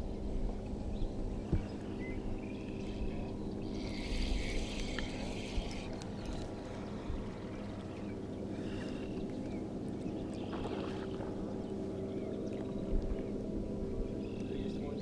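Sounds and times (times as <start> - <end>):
boat mechanical hum: 0.0 - 15.0
water sounds: 0.0 - 15.0.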